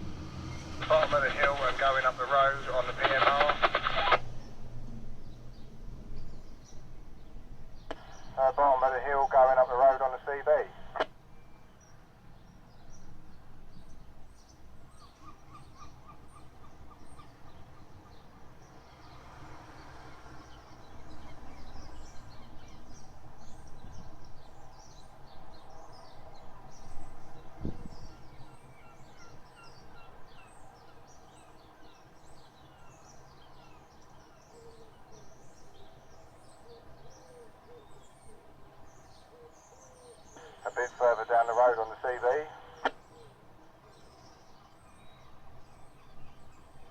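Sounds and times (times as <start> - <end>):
birds chirping: 0.0 - 46.9
lower repeated bird call: 7.8 - 12.0, 27.3 - 46.5.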